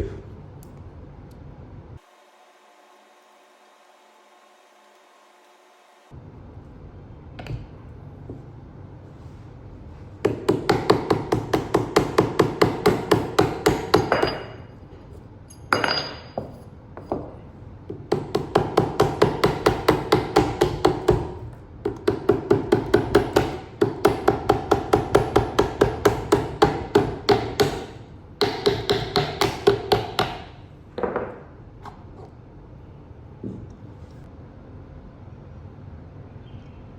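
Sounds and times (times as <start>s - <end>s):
rapid hammer tapping: 18.0s - 30.5s.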